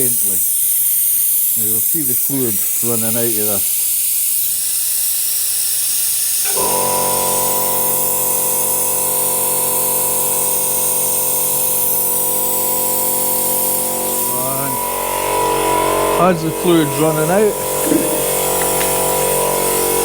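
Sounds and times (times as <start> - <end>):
vacuum brake bleeder hissing: 0.0 - 20.0
steady hum: 6.5 - 20.0.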